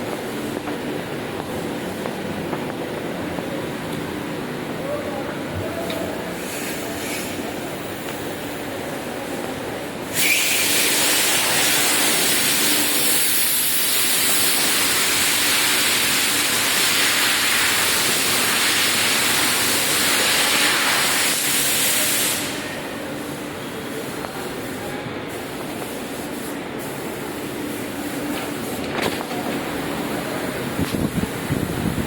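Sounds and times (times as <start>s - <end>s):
loud steady hiss: 0.0s - 32.0s
steady background noise: 0.0s - 32.0s.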